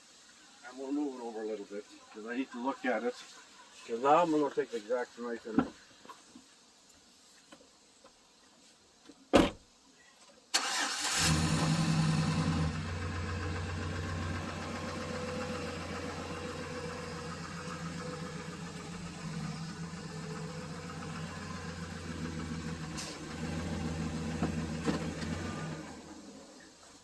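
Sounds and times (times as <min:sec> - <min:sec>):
vehicle engine idling: 0:10.6 - 0:26.9.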